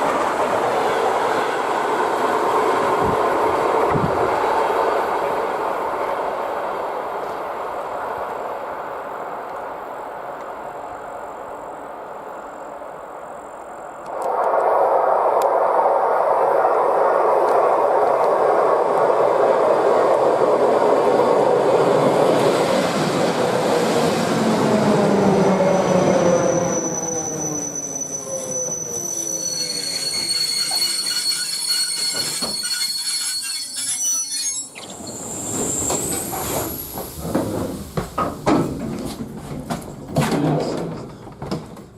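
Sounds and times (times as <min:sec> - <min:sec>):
train passing at speed: 0:00.0 - 0:33.6, 0:34.7 - 0:40.1
thin high-pitched whines: 0:26.4 - 0:36.4.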